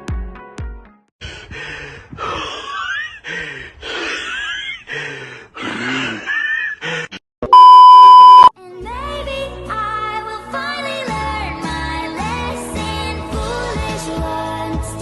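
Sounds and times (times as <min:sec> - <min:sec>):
person gasping breathily: 0:01.2 - 0:07.2.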